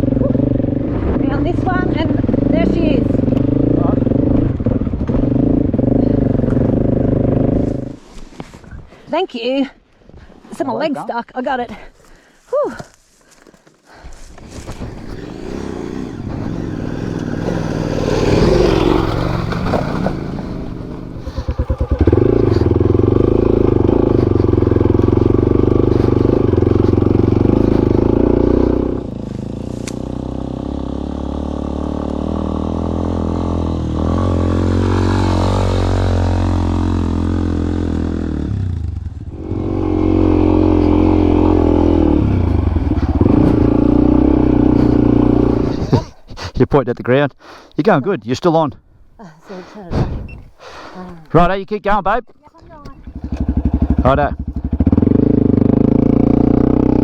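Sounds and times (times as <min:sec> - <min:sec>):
motorcycle engine under load: 0:00.0 - 0:08.0, 0:14.0 - 0:46.2, 0:52.7 - 0:57.0.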